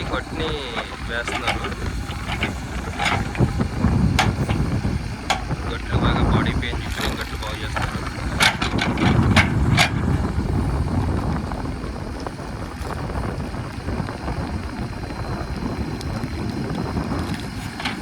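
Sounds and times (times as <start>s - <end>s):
diesel engine running: 0.0s - 18.0s
wind buffeting microphone: 0.0s - 18.0s.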